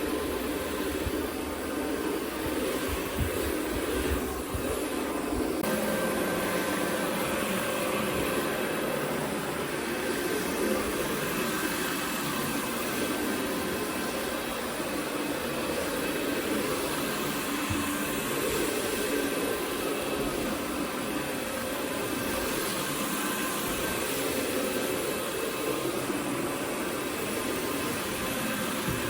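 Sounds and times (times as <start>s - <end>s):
carpet cleaner droning: 0.0s - 29.0s.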